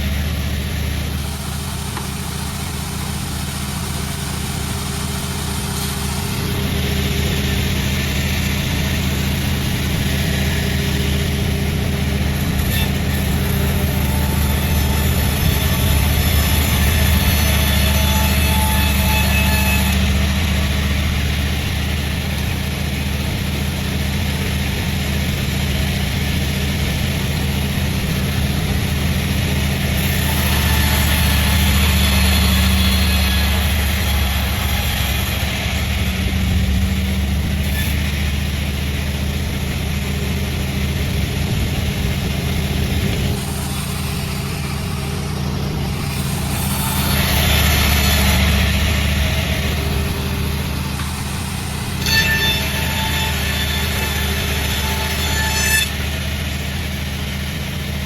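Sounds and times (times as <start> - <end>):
sawmill machinery running: 0.0 - 58.0.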